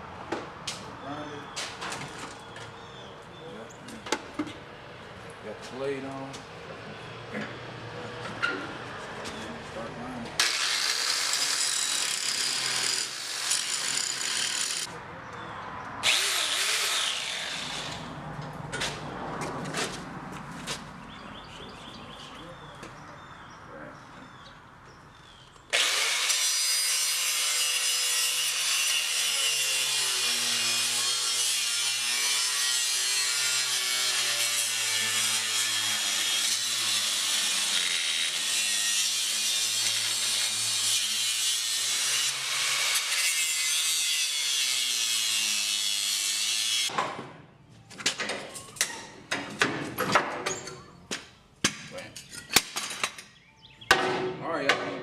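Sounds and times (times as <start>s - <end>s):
power saw cutting steel: 10.4s - 14.9s, 16.0s - 18.1s, 25.7s - 46.9s.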